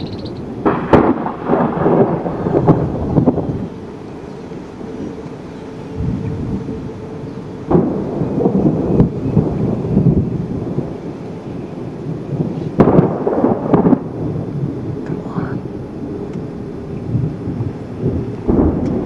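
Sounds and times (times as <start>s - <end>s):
gusting wind: 0.0s - 19.0s
thunder crack and rumble: 0.0s - 19.0s.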